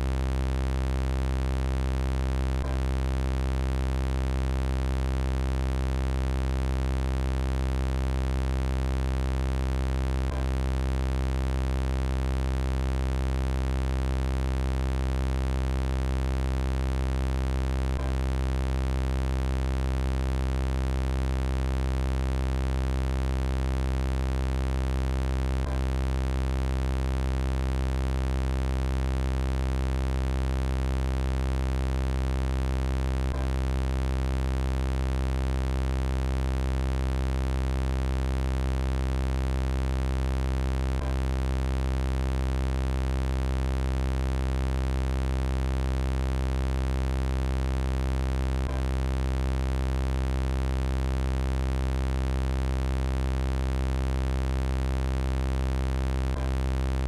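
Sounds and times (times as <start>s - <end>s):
synthesized electronic buzz: 0.0s - 57.0s
faint loop click: 56.2s - 56.7s.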